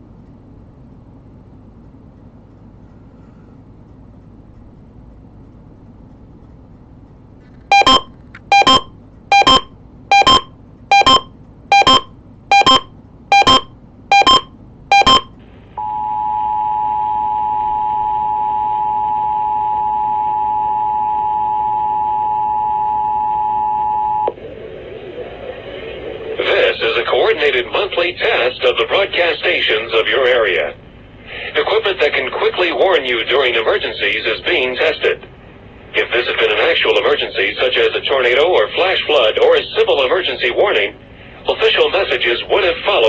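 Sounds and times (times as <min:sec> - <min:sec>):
two-tone attention signal: 0:07.7 - 0:24.3
faint radio hiss: 0:25.9 - 0:43.0.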